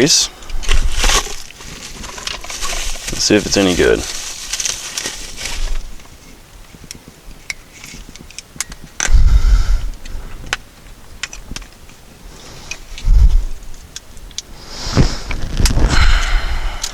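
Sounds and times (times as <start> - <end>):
packaging clicks and rustles: 0.6 - 9.1.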